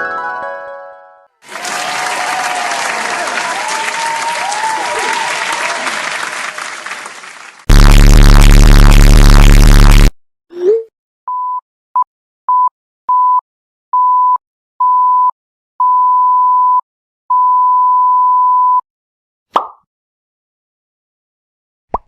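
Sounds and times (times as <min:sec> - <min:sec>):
noisy effect with low buzz: 0:07.7 - 0:10.1.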